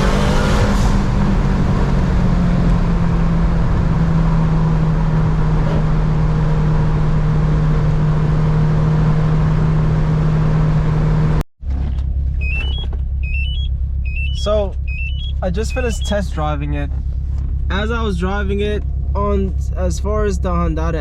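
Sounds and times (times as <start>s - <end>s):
car engine drone: 0.0s - 21.0s
road noise: 0.0s - 21.0s
engine idling low: 11.7s - 21.0s
rising electronic beep: 12.4s - 16.2s.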